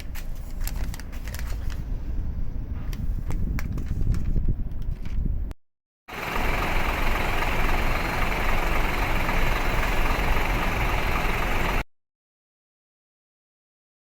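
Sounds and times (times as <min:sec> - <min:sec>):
truck diesel engine idling: 0:06.1 - 0:11.8.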